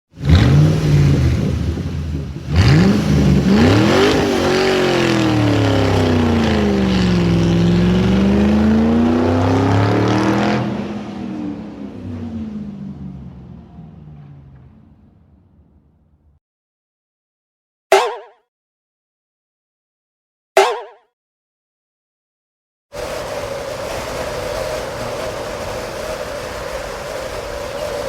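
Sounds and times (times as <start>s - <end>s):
car engine revving: 0.1s - 16.4s, 23.0s - 28.0s.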